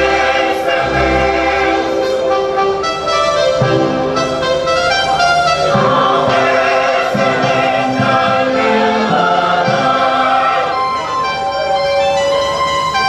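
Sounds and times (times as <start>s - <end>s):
choir singing gospel song: 0.0s - 2.2s, 5.6s - 11.1s
instrumental backing: 0.0s - 13.0s.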